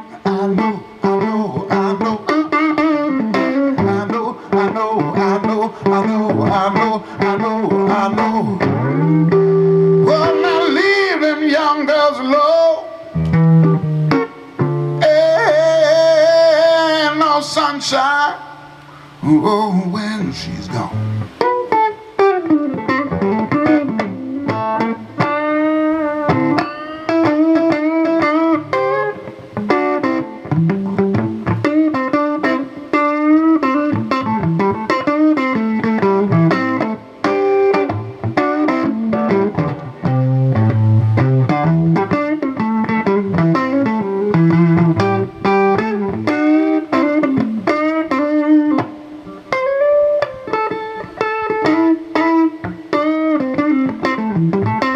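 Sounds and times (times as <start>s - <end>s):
lead guitar with bent notes: 0.0s - 54.9s
low backing line: 0.0s - 54.9s.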